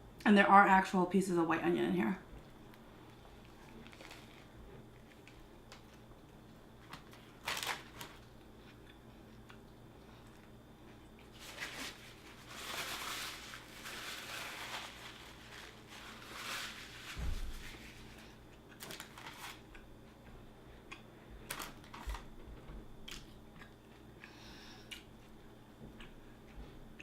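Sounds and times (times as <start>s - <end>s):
crunchy chewing of sandwich: 2.4s - 22.4s, 23.0s - 27.0s.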